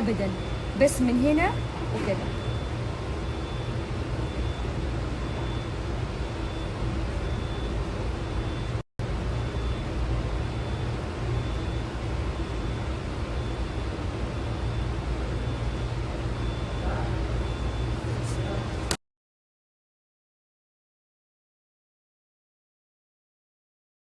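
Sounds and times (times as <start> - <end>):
faint high pulsing tone: 0.0 - 18.8
low humming: 0.0 - 19.0.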